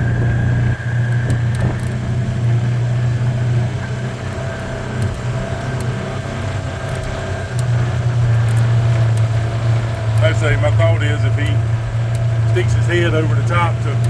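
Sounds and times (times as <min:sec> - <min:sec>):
atv engine running: 0:00.0 - 0:14.0.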